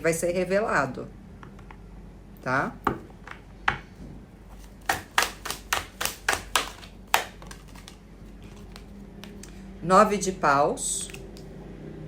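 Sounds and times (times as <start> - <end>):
cards tapping on a table: 4.8 - 9.4
card snaps: 4.8 - 9.5.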